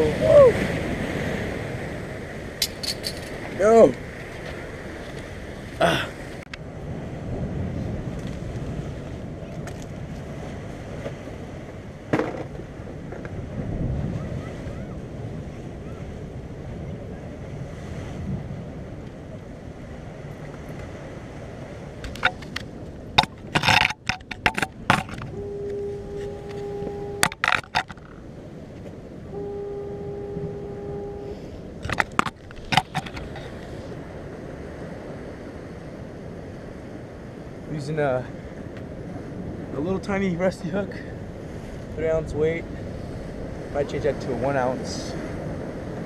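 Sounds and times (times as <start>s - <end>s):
ocean surf against a jetty: 0.0s - 46.0s
wind on the microphone: 0.0s - 46.0s
sharp clicks and knocks: 22.0s - 28.2s, 31.8s - 33.5s.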